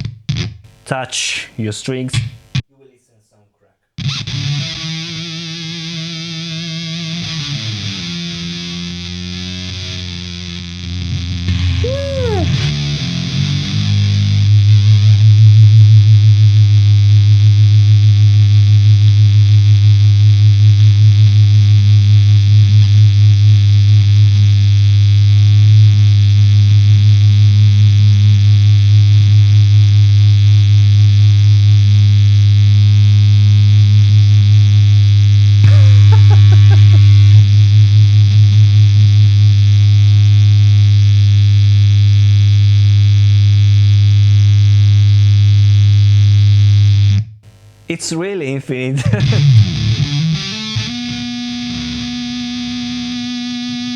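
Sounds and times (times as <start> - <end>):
buzzy fuzz electric guitar note: 0.7 - 2.6, 42.9 - 48.0.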